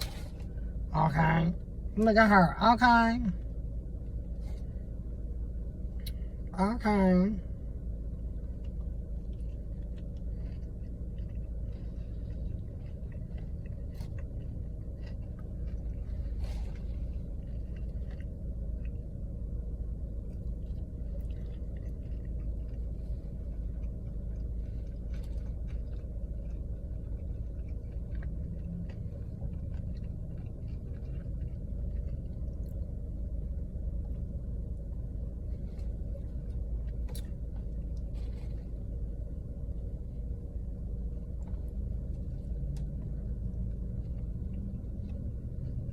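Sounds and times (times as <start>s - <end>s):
chewing and wet mouth sounds: 0.0s - 45.9s
steady low rumble: 0.0s - 45.9s.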